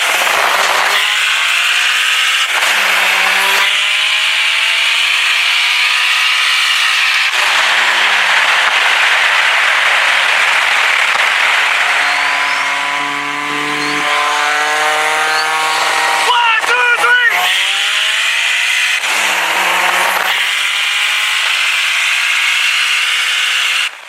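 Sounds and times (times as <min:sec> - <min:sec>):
car engine accelerating hard: 0:00.0 - 0:24.0
loud rushing noise: 0:06.3 - 0:21.9.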